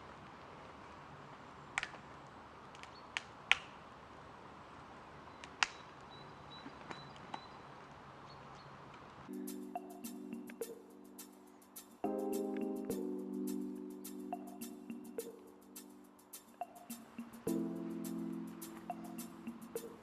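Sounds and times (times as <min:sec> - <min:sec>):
soft steady hiss: 0:07.6 - 0:20.0
background music: 0:09.3 - 0:20.0.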